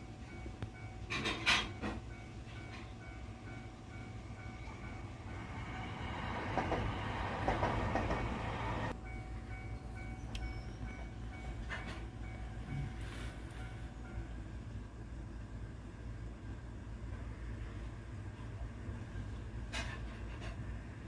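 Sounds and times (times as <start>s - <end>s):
level crossing warning bell: 0.0s - 6.5s, 8.9s - 14.6s
train rumble and wheel clatter: 0.0s - 21.0s.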